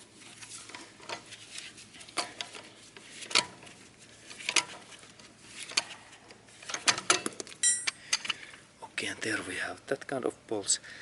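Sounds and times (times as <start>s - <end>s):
wheel bolts clicking and clinking: 6.6s - 8.4s.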